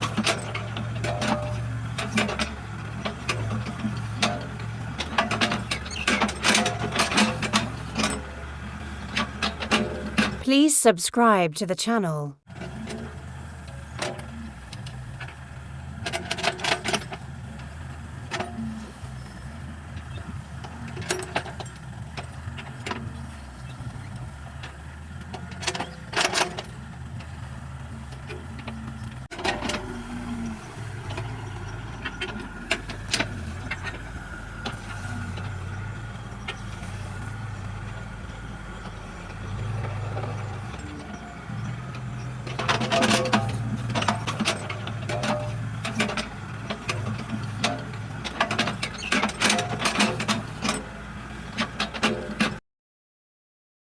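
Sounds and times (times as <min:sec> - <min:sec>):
excavator diesel engine running: 0:00.0 - 0:11.4, 0:12.0 - 0:52.6
metallic clanks of bucket: 0:42.5 - 0:50.8.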